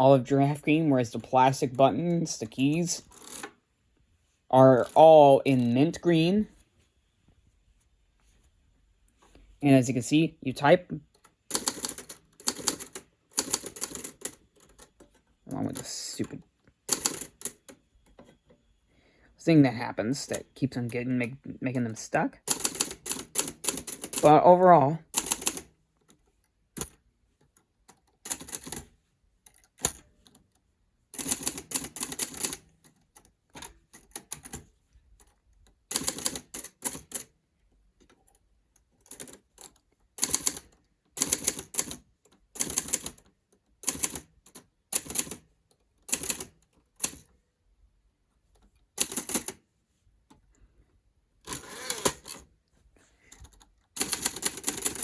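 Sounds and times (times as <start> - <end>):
manual typewriter keys clacking: 11.5 - 14.9, 16.9 - 17.7, 22.4 - 24.4, 25.2 - 25.7, 28.2 - 28.9, 31.2 - 32.7, 35.9 - 37.3, 39.0 - 43.2, 43.8 - 45.4, 46.0 - 47.3, 49.0 - 49.6, 53.4 - 55.0.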